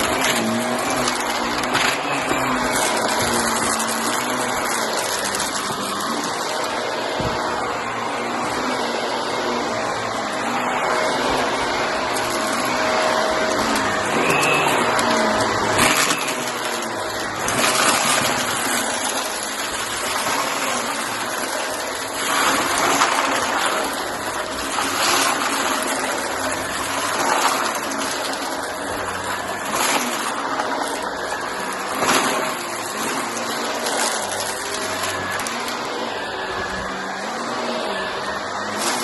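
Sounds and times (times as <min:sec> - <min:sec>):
vacuum cleaner running: 0:00.0 - 0:39.0.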